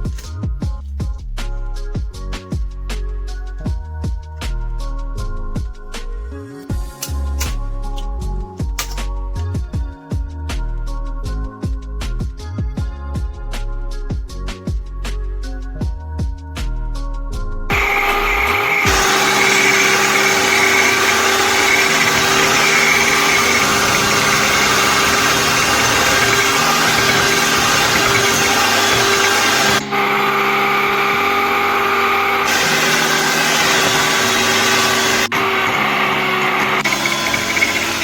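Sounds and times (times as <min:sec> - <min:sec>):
electric mixer whipping: 0:17.7 - 0:38.0.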